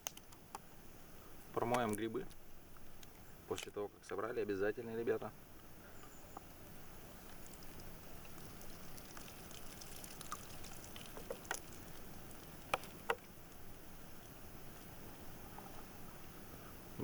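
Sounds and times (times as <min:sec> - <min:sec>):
small handling ticks: 0:01.4 - 0:04.2, 0:04.8 - 0:16.0
sharp clicks: 0:01.6 - 0:02.4
water splashing and trickling: 0:06.5 - 0:14.9.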